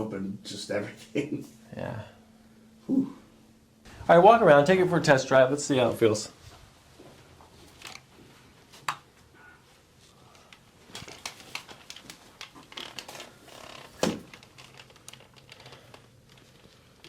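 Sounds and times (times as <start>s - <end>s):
footsteps walking around: 6.3s - 10.2s.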